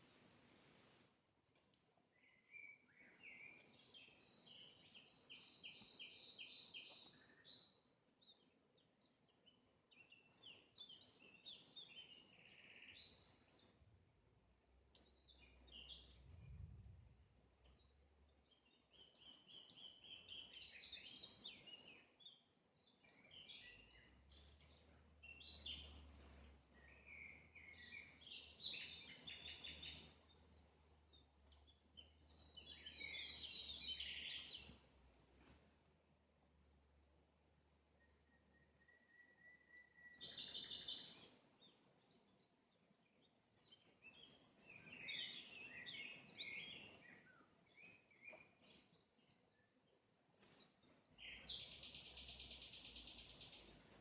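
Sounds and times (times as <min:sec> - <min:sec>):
faint songbirds singing: 0:00.0 - 0:54.0
low steady rumble: 0:16.2 - 0:18.3.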